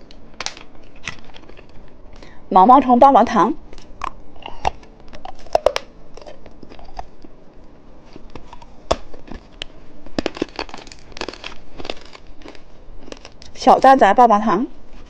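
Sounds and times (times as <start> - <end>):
plastic wrapper crinkling and tearing: 8.2 - 13.6.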